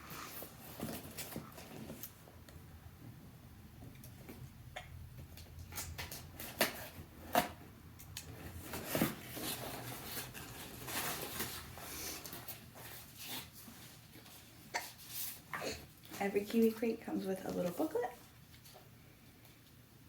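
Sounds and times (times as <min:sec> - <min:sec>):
cardboard box and paper rustling: 0:08.3 - 0:14.5.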